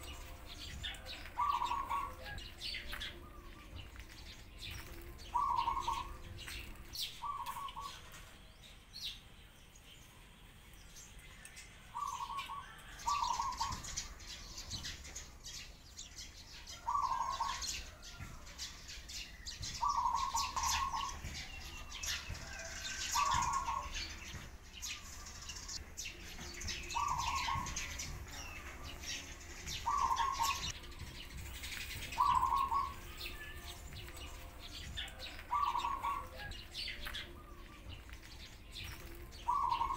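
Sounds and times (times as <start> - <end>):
sparrows chirping: 0.0 - 39.9
dove cooing: 0.9 - 3.6, 5.3 - 6.2, 7.2 - 8.2, 11.9 - 13.8, 16.8 - 18.1, 26.9 - 27.8, 29.8 - 30.7, 32.1 - 33.1, 35.0 - 36.5, 39.4 - 39.9.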